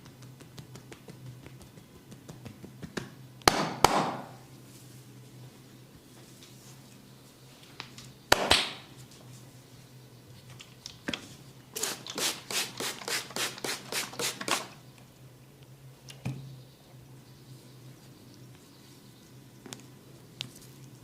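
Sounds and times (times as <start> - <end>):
percussive massage strikes: 0.0 - 4.4, 8.3 - 8.9.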